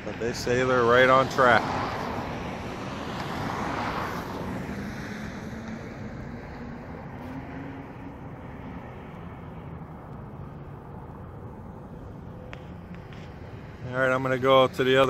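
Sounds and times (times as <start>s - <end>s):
motor vehicle passing by: 0.0s - 15.0s.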